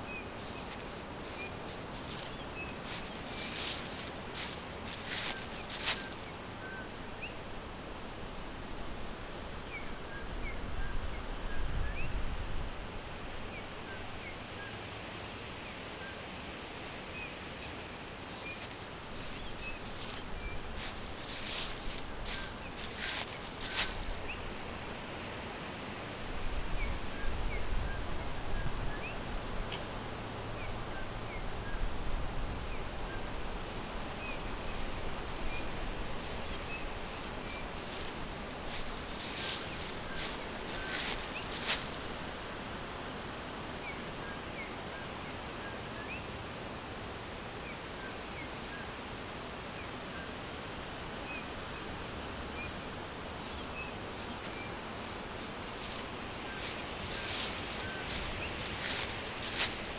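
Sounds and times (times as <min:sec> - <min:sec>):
rustling: 0:00.0 - 0:06.4, 0:16.8 - 0:24.6, 0:34.6 - 0:42.4, 0:52.6 - 0:59.9
small birds chirping: 0:00.0 - 0:06.4, 0:16.8 - 0:24.6, 0:33.8 - 0:42.3, 0:52.5 - 0:59.9
steady background hiss: 0:00.0 - 0:59.9.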